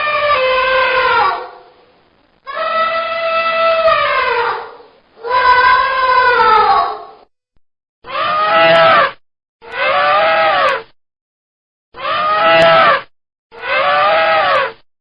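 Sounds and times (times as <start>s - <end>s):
elephant trumpeting: 8.1s - 9.1s, 9.7s - 10.8s, 12.0s - 13.0s, 13.6s - 14.7s.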